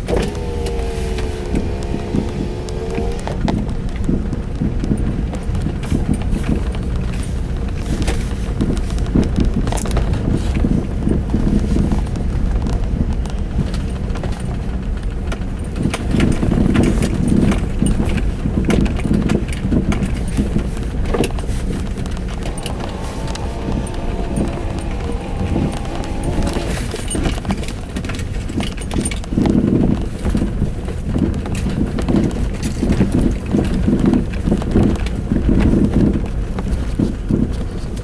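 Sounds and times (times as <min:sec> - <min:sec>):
steady low rumble: 0:00.0 - 0:18.4, 0:19.6 - 0:29.3
car suspension knocking: 0:15.6 - 0:30.1.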